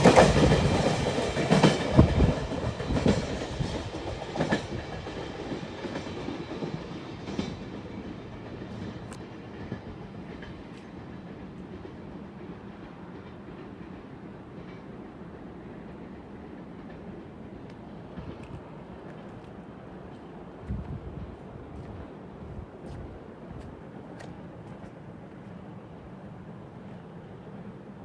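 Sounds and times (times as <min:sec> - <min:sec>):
train wheels clattering: 0:00.0 - 0:19.5.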